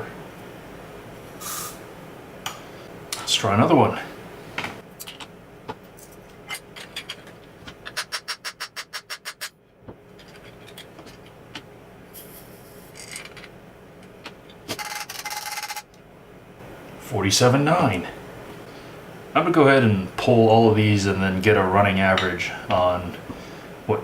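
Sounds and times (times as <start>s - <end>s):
short hissing rattle: 1.4s - 1.8s, 12.2s - 13.3s.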